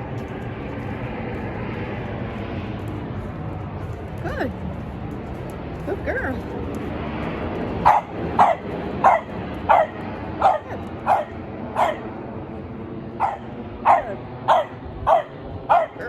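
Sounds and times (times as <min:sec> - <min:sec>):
dog barking: 0:07.8 - 0:12.1, 0:13.2 - 0:16.0.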